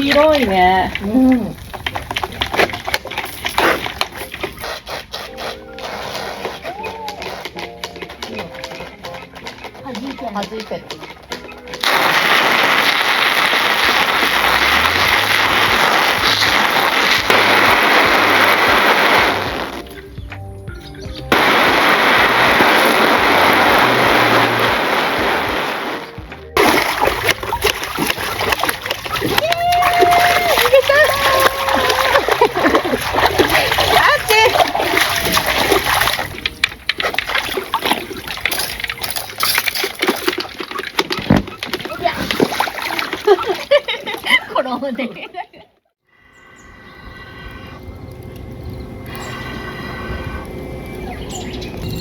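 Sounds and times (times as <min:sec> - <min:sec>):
water spraying on tent fabric: 0:00.0 - 0:07.6, 0:11.8 - 0:20.0, 0:21.3 - 0:44.2.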